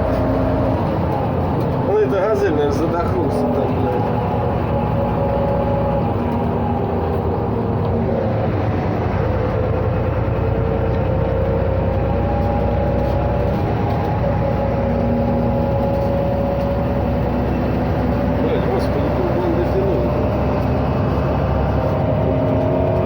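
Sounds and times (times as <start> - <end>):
bus diesel engine running: 0.0 - 23.0
road noise: 0.0 - 23.0.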